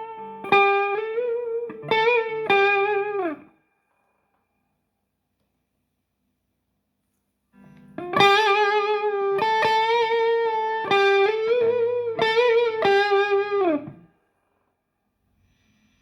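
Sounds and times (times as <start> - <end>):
electric guitar melody with vibrato: 0.0 - 3.6, 7.6 - 14.2.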